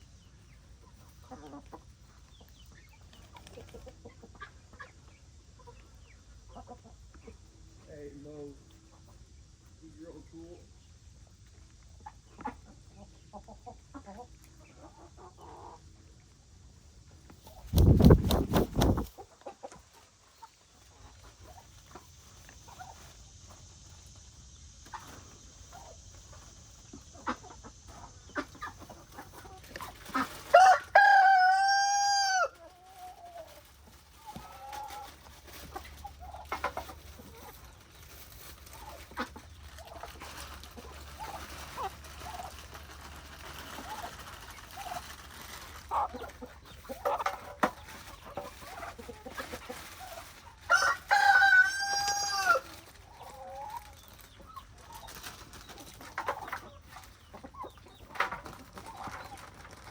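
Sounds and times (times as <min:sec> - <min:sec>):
hens clucking softly: 0:00.1 - 0:31.1, 0:32.4 - 0:59.9
rooster crowing: 0:30.5 - 0:32.6, 0:50.7 - 0:52.7.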